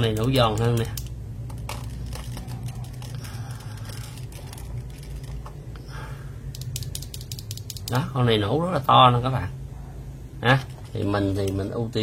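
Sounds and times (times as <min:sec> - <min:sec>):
mechanical keyboard keys clacking: 0:00.0 - 0:05.5, 0:06.6 - 0:08.0
steady low hum: 0:00.0 - 0:12.0.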